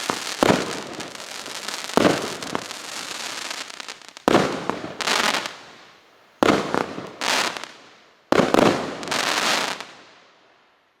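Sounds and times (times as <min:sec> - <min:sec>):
firework sharp report: 0:00.0 - 0:05.6
firework crackling: 0:00.0 - 0:10.1.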